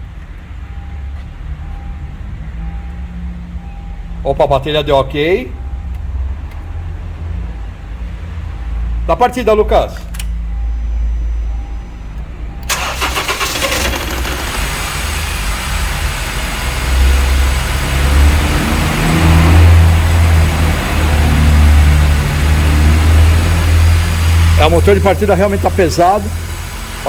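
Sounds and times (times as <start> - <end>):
starter motor cranking: 12.7 - 16.5
car engine running: 12.7 - 27.0.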